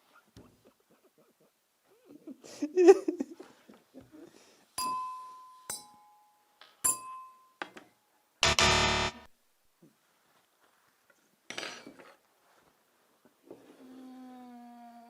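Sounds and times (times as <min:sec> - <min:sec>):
sharp clink with ringing tone: 0:04.8 - 0:07.6
loud harsh buzzing: 0:08.4 - 0:09.3.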